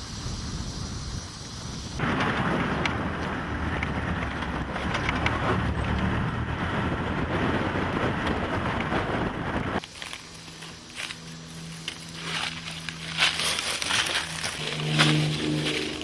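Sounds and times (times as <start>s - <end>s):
wind on microphone: 0.0s - 9.8s
vehicle driving on rough track: 2.0s - 16.0s.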